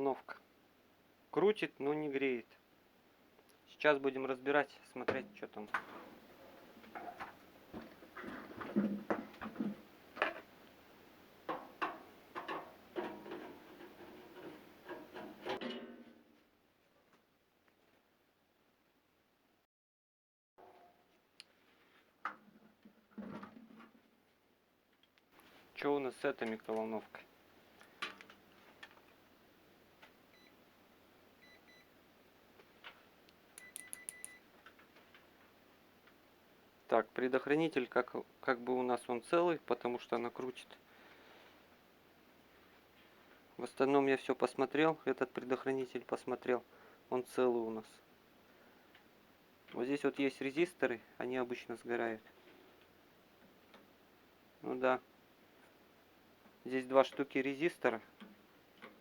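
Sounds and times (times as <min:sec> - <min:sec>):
clicks and knocks of metal casing: 0:11.5 - 0:16.0
microwave control panel beeps: 0:31.4 - 0:31.9, 0:33.6 - 0:34.4
button clicks: 0:33.6 - 0:34.4.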